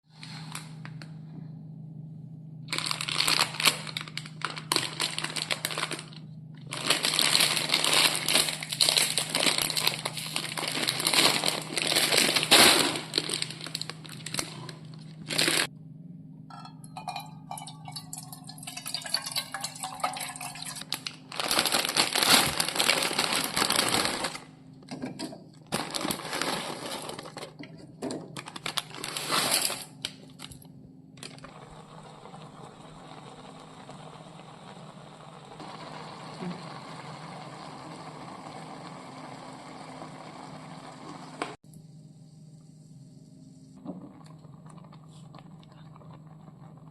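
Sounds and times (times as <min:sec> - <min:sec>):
low hum: 0:00.2 - 0:46.9
plastic packaging crinkling and tearing: 0:02.7 - 0:15.7, 0:19.8 - 0:24.5, 0:25.7 - 0:30.6.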